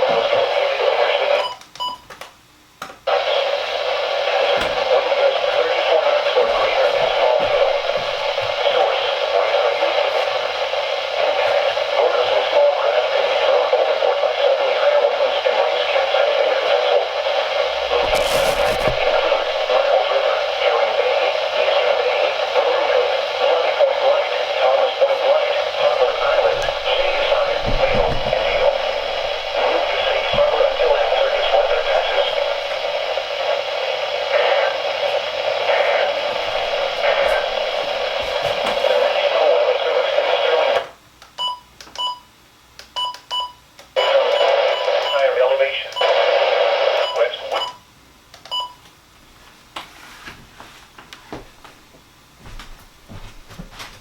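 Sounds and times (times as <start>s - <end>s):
radio static hiss: 0.0s - 1.5s, 3.0s - 41.0s, 44.0s - 47.6s
knock or bump: 26.5s - 29.2s.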